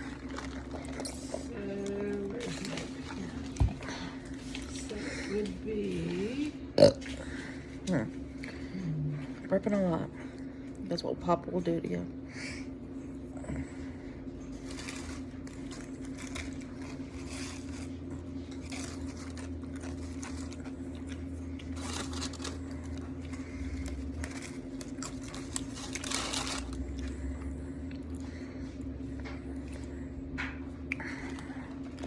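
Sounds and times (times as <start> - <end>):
steady low hum: 0.0 - 32.0
rustling crunching and scraping: 14.4 - 27.1.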